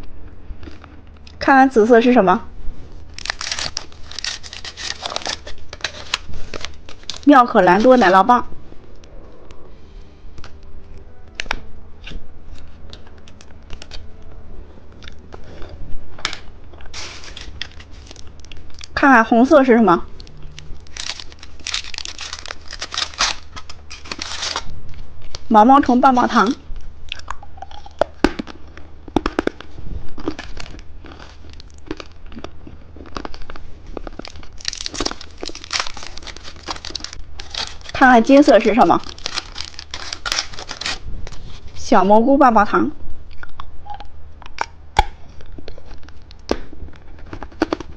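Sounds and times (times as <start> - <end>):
low steady hum: 0.0 - 47.9
plastic wrapper crinkling: 3.0 - 8.5, 11.3 - 14.2, 16.2 - 19.0, 20.1 - 25.5, 26.4 - 41.8.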